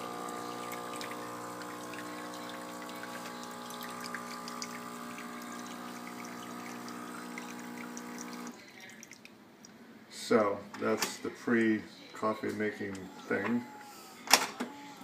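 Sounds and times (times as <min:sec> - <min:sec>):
espresso machine pump humming: 0:00.0 - 0:08.6
water spattering into a cup: 0:00.0 - 0:09.3.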